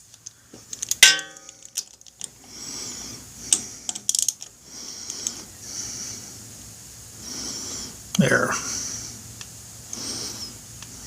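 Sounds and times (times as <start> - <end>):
metallic clank ringing: 1.0 - 1.6.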